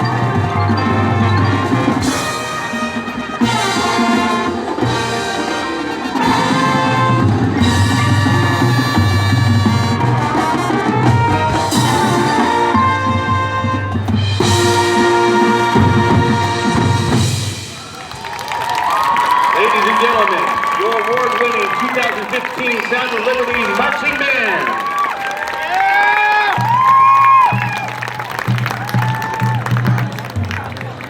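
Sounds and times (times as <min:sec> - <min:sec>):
drums and percussion: 0:00.0 - 0:31.0
marching band brass chords: 0:00.0 - 0:31.0.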